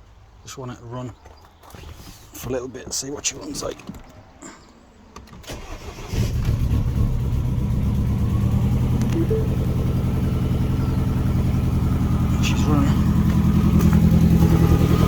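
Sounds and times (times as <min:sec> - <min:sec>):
car engine cranking and starting: 0:05.2 - 0:15.0
car engine running with leaking exhaust: 0:06.3 - 0:15.0.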